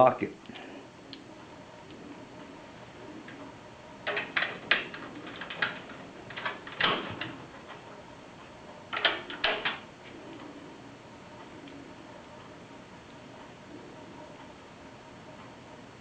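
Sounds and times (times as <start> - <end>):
drive clicking into computer case: 4.0 - 7.9, 8.9 - 10.5.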